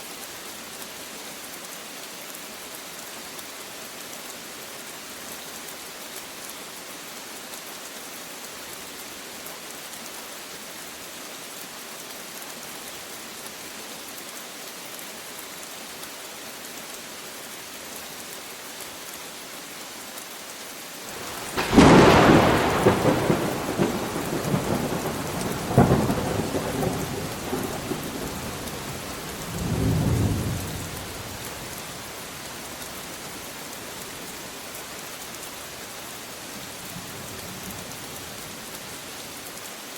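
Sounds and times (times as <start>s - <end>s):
steady rain falling: 0.0s - 39.9s
thunderclap and rumbles: 21.1s - 31.5s.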